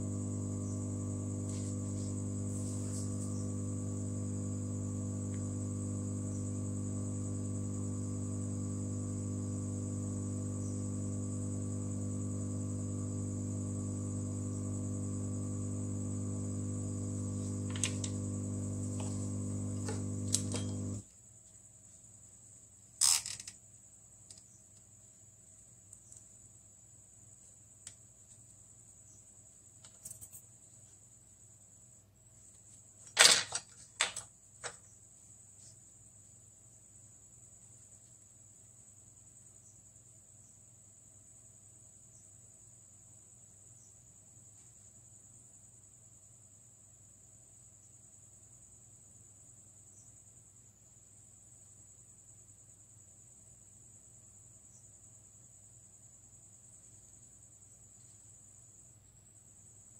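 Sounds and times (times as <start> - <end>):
electrical hum with high whine: 0.0 - 21.0.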